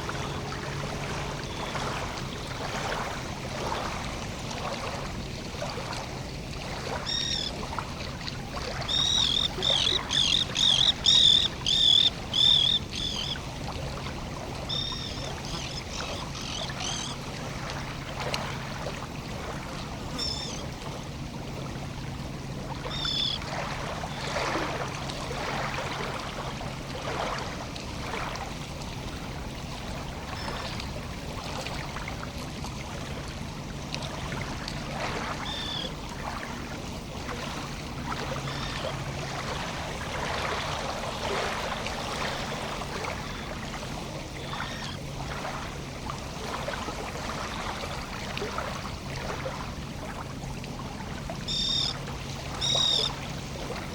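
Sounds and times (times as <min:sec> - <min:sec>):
steady low hum: 0:00.0 - 0:06.8
water lapping and trickling: 0:00.0 - 0:53.9
high bird chirps: 0:08.9 - 0:13.4.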